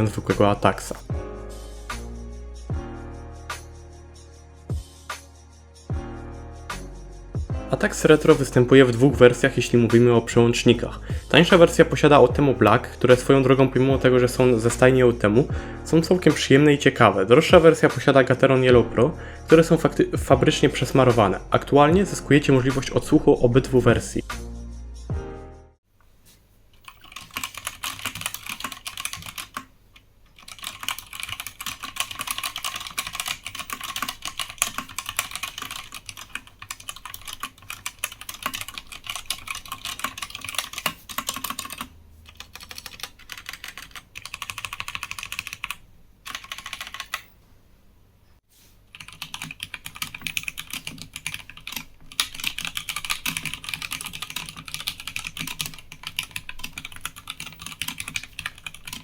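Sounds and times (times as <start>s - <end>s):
mechanical keyboard typing: 26.8s - 29.7s, 30.3s - 47.3s, 48.9s - 59.0s.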